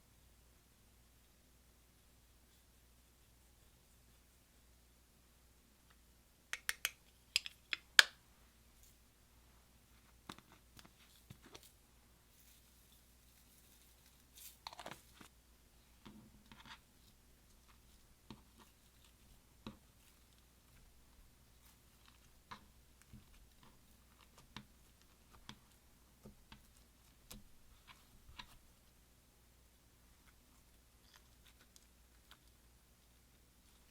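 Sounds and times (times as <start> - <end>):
sticky clicks of slime mixing: 6.5 - 8.2, 21.6 - 29.0.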